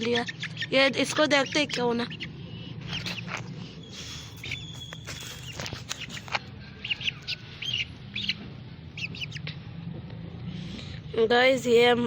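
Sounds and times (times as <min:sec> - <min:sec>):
chicks cheeping: 0:00.0 - 0:09.6.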